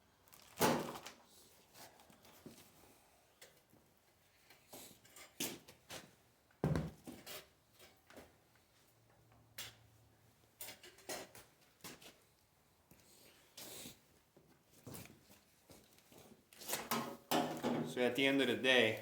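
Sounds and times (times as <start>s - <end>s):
handling knocks clicks and rustles: 14.8s - 18.0s.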